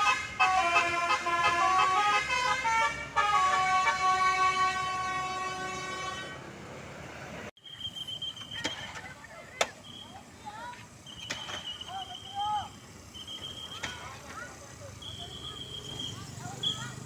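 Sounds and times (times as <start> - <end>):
multi-tone bus horn: 0.0 - 6.6.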